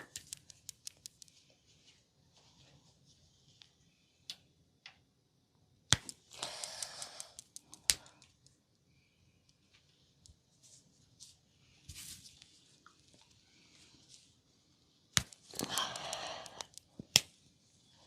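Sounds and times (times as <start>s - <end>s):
sharp clicks: 6.0s - 8.3s.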